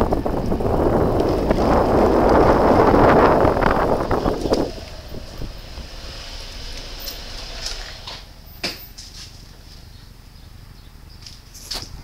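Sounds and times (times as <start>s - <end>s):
wind buffeting microphone: 0.0s - 8.6s
scooter and road rumble: 0.0s - 12.0s.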